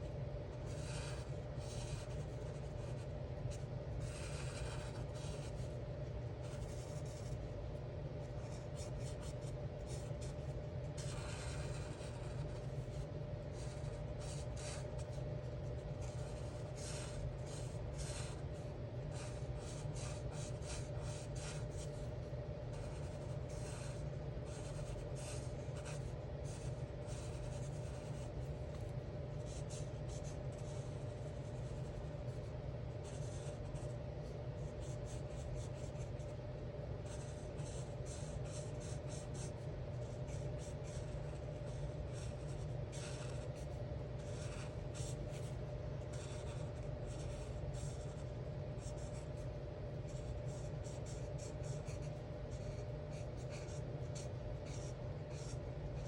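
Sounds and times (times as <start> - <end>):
steady low hum: 0.0 - 56.0
marker rubbing on paper: 0.7 - 3.0, 4.0 - 5.6, 8.8 - 13.0, 13.6 - 15.1, 16.0 - 18.4, 19.2 - 22.0, 22.7 - 28.8, 33.0 - 33.9, 37.1 - 39.6, 40.3 - 45.5, 46.1 - 49.1, 53.4 - 55.6.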